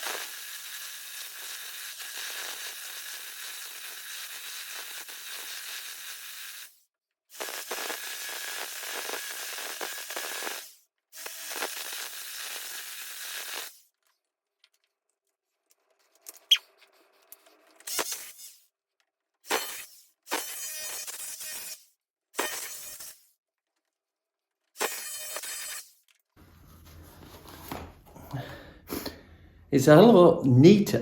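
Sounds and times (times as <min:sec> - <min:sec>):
power tool grinding into brick: 0:00.0 - 0:06.7, 0:07.3 - 0:13.8, 0:19.4 - 0:23.3.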